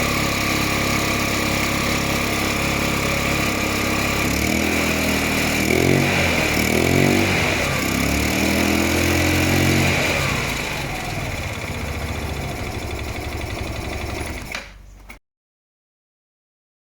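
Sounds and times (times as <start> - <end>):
scooter engine revving: 0.0 - 15.2.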